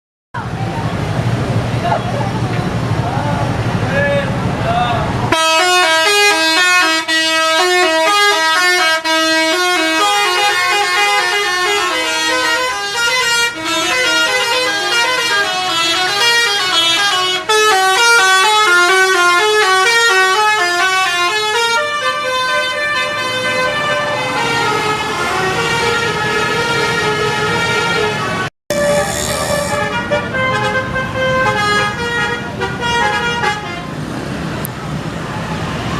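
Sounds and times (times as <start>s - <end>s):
bus musical horns: 5.3s - 34.0s.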